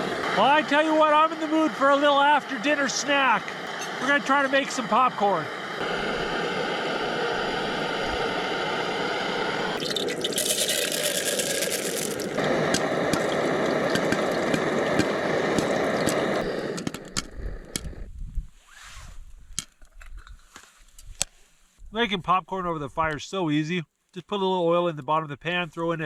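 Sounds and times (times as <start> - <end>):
popcorn sizzling in a pan: 0.0 - 17.9
popcorn popping: 9.8 - 17.9.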